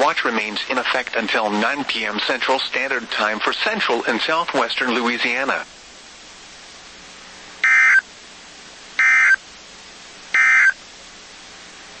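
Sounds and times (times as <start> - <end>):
faint radio hiss: 0.0 - 12.0
data tone bursts: 7.6 - 8.0, 9.0 - 9.4, 10.4 - 10.8.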